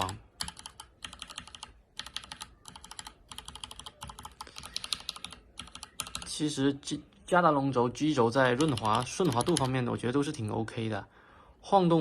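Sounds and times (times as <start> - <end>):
mechanical keyboard clacking: 0.0 - 6.4, 8.4 - 9.8.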